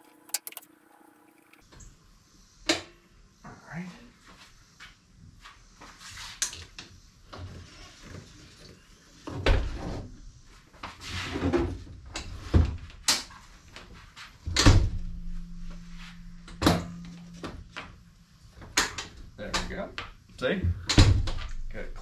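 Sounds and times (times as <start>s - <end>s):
faint steady hum: 14.4s - 22.0s
knocks and rattles of hard parts: 14.5s - 18.0s.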